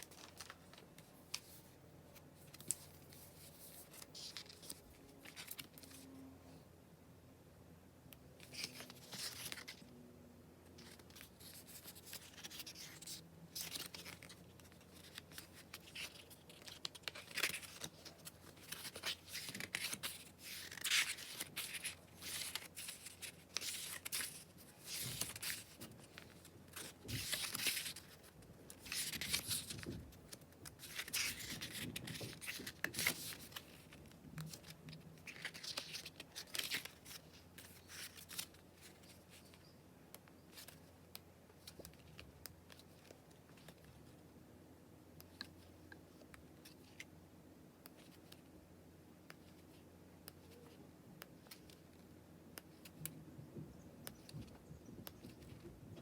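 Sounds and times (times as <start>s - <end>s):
packaging rustling and tearing: 10.8s - 30.0s.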